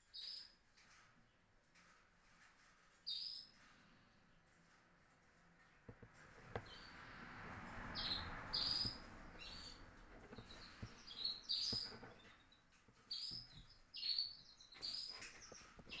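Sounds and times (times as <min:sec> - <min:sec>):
canaries chirping: 0:00.0 - 0:01.0, 0:01.8 - 0:03.7, 0:06.6 - 0:07.0, 0:07.8 - 0:16.0.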